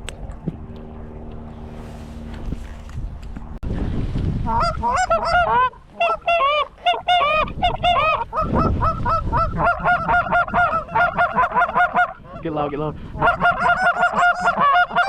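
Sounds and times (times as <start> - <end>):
geese honking and clucking: 4.5 - 15.0.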